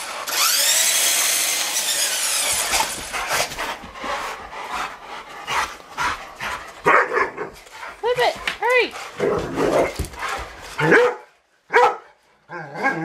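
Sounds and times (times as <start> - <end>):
electric motor whining: 0.0 - 3.3.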